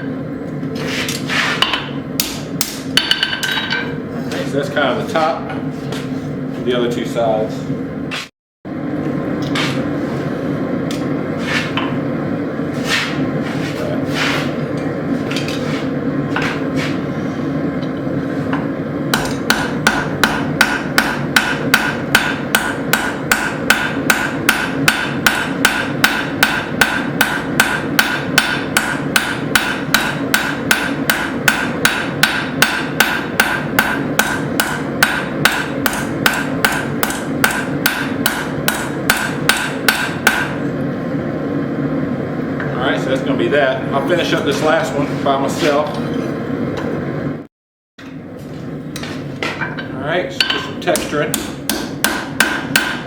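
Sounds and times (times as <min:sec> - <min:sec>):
hammer blows ringing on anvil: 0:19.1 - 0:40.6, 0:50.4 - 0:53.0.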